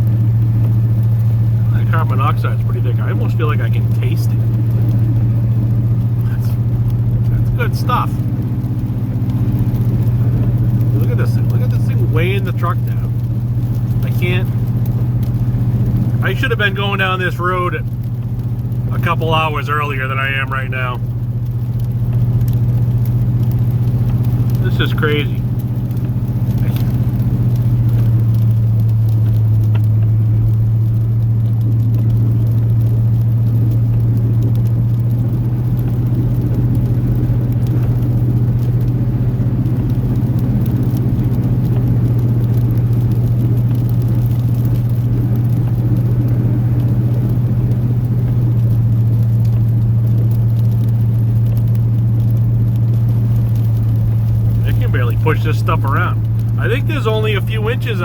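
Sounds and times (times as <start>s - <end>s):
truck engine droning under load: 0.0s - 58.0s.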